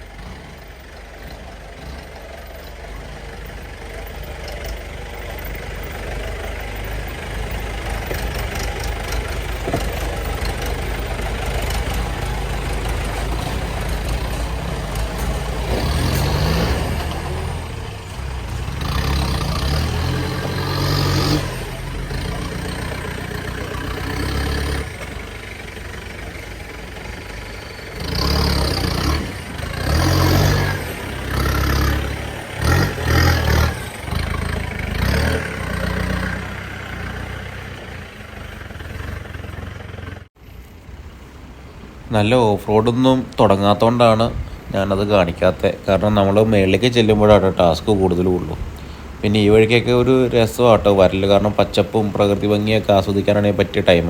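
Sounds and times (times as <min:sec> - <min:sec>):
off-road vehicle engine revving: 0:00.0 - 0:40.4, 0:41.0 - 0:54.0.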